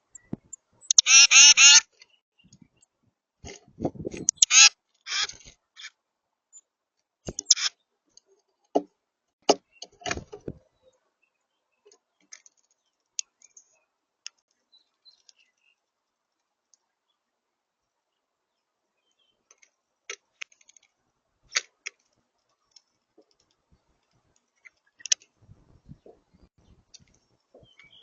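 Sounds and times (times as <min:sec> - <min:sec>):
bird harsh raspy calls: 0:00.8 - 0:02.0, 0:04.2 - 0:06.0, 0:07.3 - 0:07.8.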